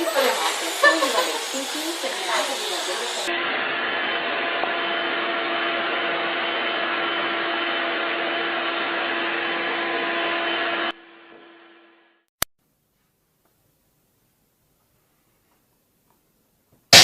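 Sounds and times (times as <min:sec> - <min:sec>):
vacuum cleaner running: 0:00.0 - 0:11.5.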